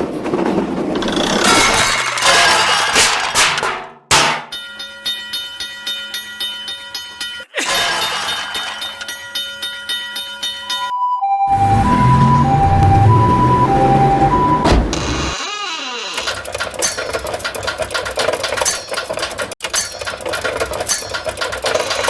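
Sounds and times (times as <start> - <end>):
two-note ambulance siren: 10.8 - 14.8
rapid regular clicking: 16.3 - 22.0.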